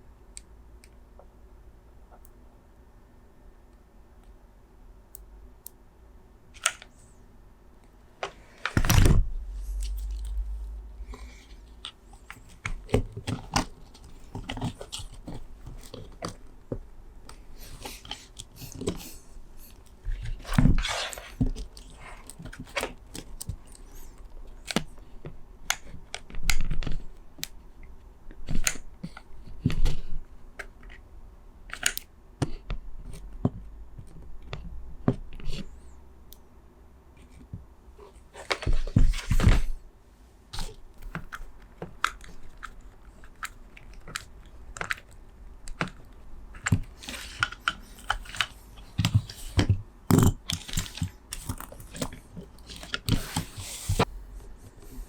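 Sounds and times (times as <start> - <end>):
plastic parts clicking and tapping: 40.6 - 53.5.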